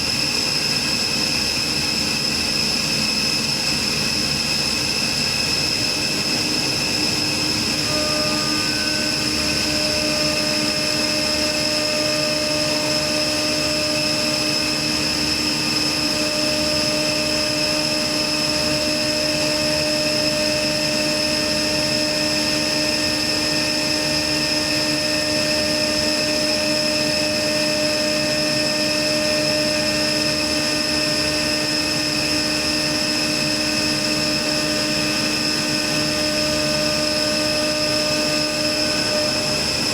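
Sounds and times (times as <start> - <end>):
chiller machine whine: 0.0 - 39.9.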